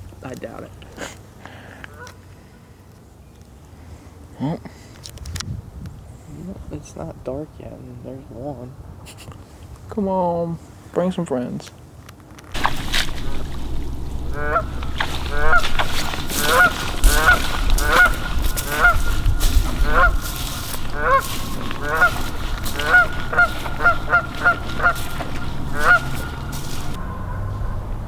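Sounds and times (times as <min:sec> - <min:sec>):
goose honking: 0:12.6 - 0:27.8
low rumbling noise: 0:12.6 - 0:28.0.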